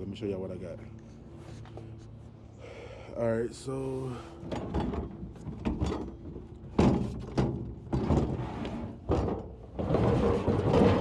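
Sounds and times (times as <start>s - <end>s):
hollow plastic thunks: 4.5s - 8.4s.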